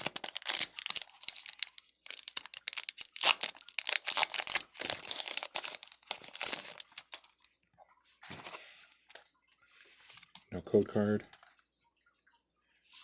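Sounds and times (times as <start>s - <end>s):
foil wrapper crinkling and tearing: 0.0s - 7.5s.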